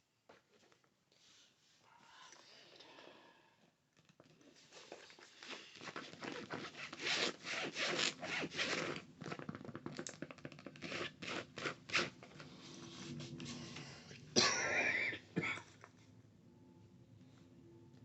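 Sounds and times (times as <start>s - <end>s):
rubbing and scratching strokes: 4.7s - 9.0s.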